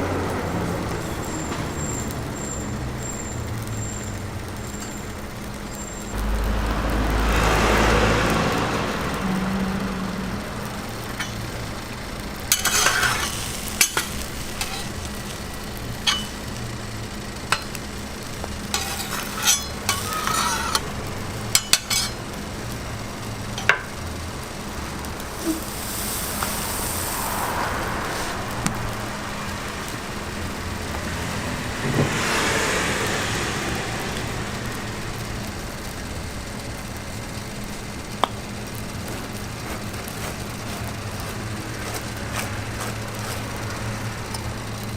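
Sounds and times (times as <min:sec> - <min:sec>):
food sizzling on a griddle: 0:00.0 - 0:44.9
metal utensils clicking and knocking: 0:16.0 - 0:16.4, 0:18.7 - 0:20.9, 0:21.6 - 0:22.2.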